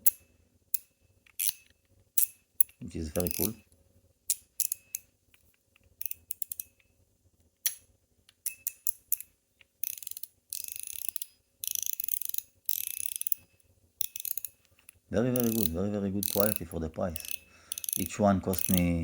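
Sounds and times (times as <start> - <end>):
sharp metal clicks: 0.0 - 3.6, 4.3 - 6.8, 7.6 - 19.0
ratcheting rattles: 1.4 - 3.6, 8.4 - 19.0.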